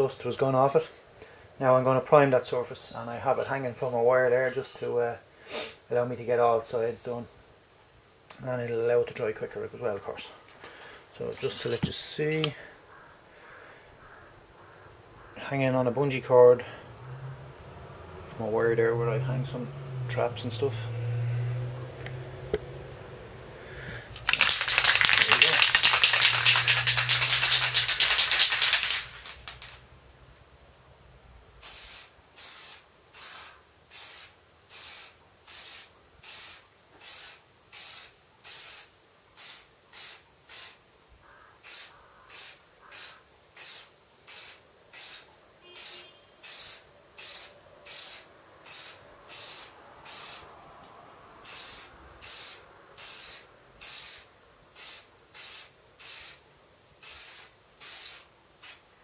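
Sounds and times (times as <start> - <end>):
spray hissing bursts: 31.6 - 40.8, 41.6 - 50.6, 51.4 - 56.4, 57.0 - 59.0.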